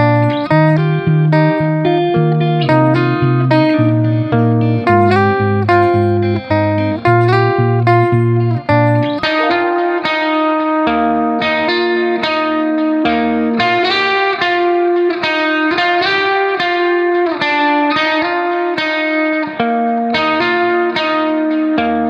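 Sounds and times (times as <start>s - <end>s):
bass line: 0.0s - 9.8s
plucked guitar tune: 0.0s - 22.0s.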